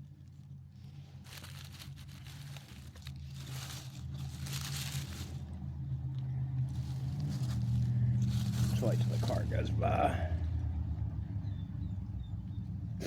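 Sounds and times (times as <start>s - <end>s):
crinkly rustling: 0.0s - 9.8s
car engine humming: 0.0s - 13.0s.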